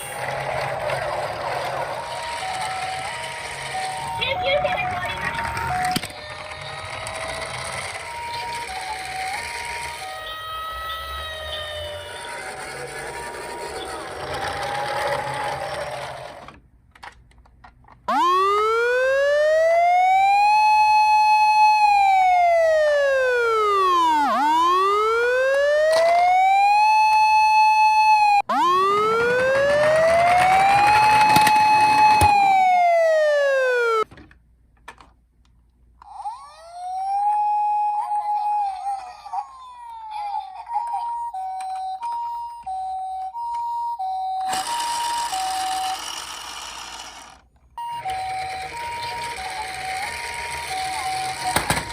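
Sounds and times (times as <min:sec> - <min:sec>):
toy electronic wail siren: 0:00.0 - 0:16.4, 0:18.1 - 0:34.1, 0:36.0 - 0:51.9.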